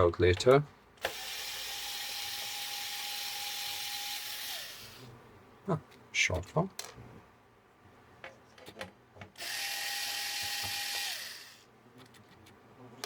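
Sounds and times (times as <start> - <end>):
electric screwdriver motor whirring: 1.0 - 5.0, 9.4 - 11.6.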